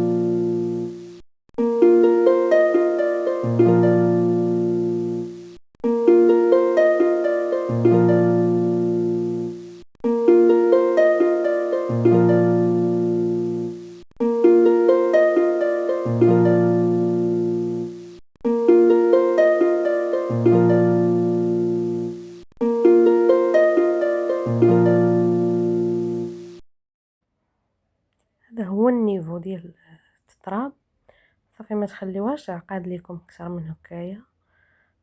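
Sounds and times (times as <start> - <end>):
plucked string phrase: 0.0 - 1.0.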